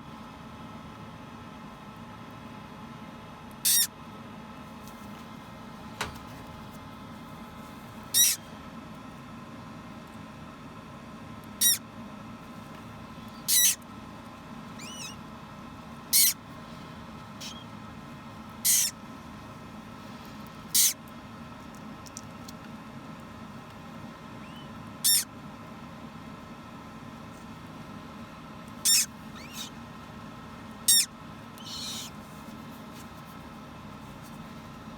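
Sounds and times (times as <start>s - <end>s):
steady low hum: 0.0s - 34.9s
chick high-pitched peeps: 8.2s - 8.4s, 13.4s - 13.8s, 16.2s - 16.4s, 18.6s - 18.9s, 24.5s - 25.2s, 28.8s - 29.7s, 30.9s - 32.2s.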